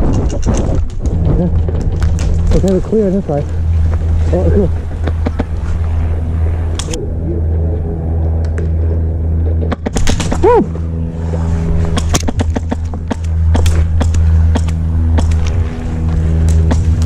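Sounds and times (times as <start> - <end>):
steady low hum: 0.0 - 17.0
airsoft guns firing: 9.9 - 10.5
person shouting: 10.4 - 10.8.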